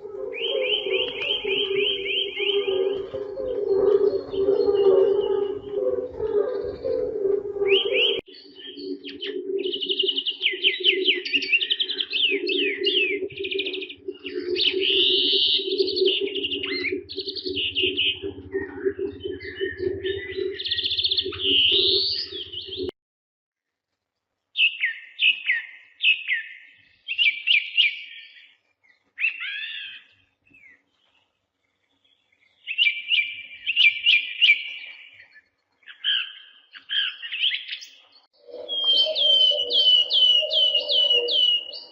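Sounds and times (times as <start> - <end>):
steady low hum: 0.0 - 8.2
songbirds chirping and trilling: 0.0 - 22.9, 24.0 - 41.9.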